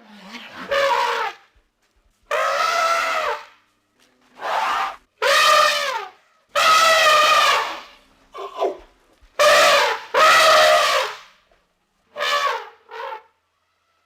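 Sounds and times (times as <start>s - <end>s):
elephant trumpeting: 0.1s - 1.4s, 2.3s - 3.6s, 4.4s - 8.8s, 9.4s - 11.3s, 12.1s - 13.4s.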